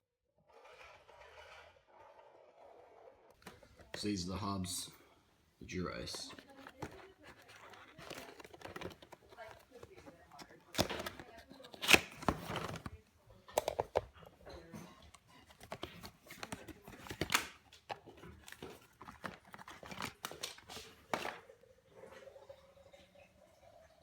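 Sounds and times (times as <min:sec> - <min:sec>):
packaging crinkling: 0:05.9 - 0:13.0, 0:15.0 - 0:21.5
clicks and knocks of handling: 0:06.2 - 0:21.5.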